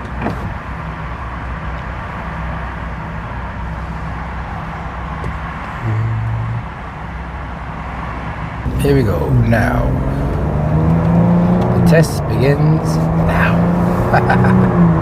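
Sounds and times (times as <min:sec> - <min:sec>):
car cabin engine and road drone: 0:00.0 - 0:15.0
low tone: 0:05.8 - 0:07.0, 0:08.7 - 0:15.0.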